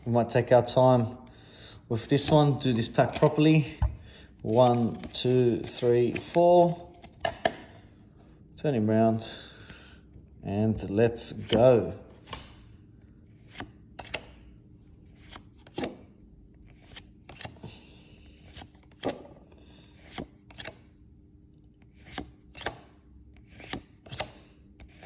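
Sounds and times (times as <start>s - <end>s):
cards snapping off stack: 13.5s - 14.4s.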